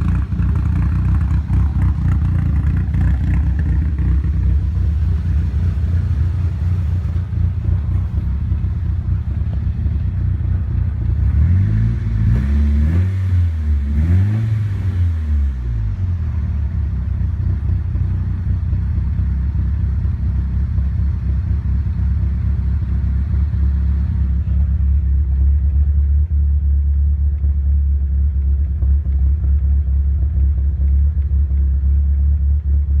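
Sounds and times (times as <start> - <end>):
car engine idling roughly: 0.0 - 11.5, 15.9 - 33.0
car engine revving: 0.0 - 17.7.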